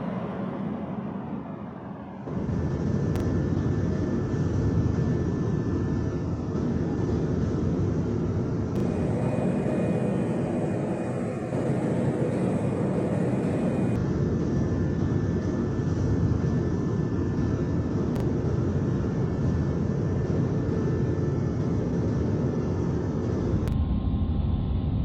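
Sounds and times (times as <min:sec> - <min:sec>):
aircraft engines running: 0:00.0 - 0:25.0.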